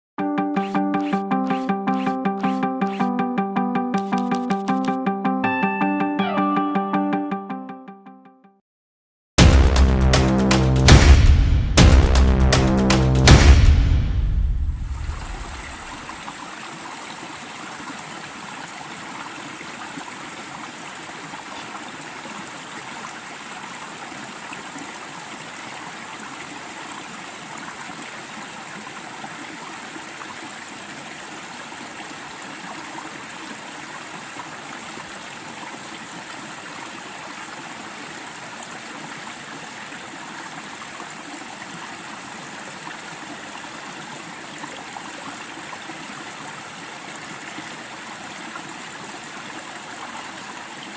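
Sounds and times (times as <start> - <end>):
mountain stream flowing: 14.8 - 50.9.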